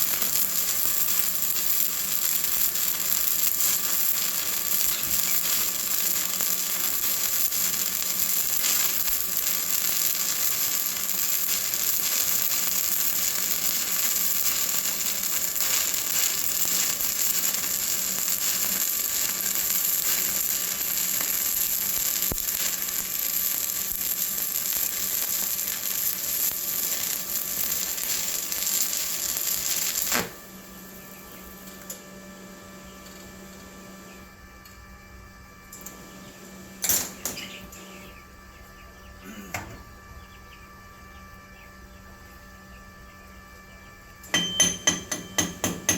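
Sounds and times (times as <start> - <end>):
welding arc crackling: 0.0 - 32.0, 44.2 - 45.9
welding machine hum: 0.0 - 45.9.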